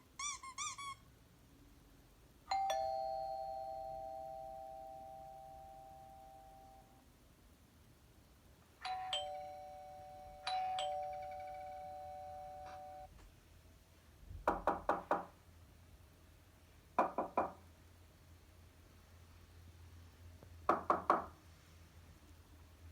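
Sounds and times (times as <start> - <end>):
two-note doorbell chime: 2.5 - 7.0, 8.8 - 13.1
knocking on a door: 14.3 - 15.3, 17.0 - 17.6, 20.7 - 21.3.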